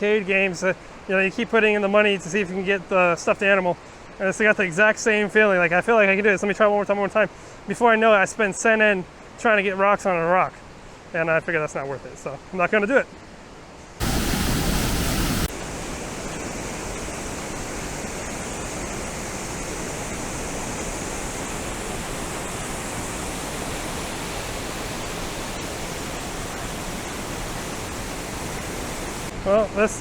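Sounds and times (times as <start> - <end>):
waterfall rushing: 14.0 - 30.0.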